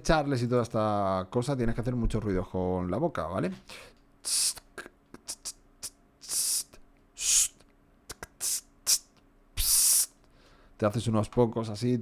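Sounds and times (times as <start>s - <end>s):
mouth hissing tss sounds: 4.2s - 10.2s
tongue and lip clicks: 7.5s - 10.1s.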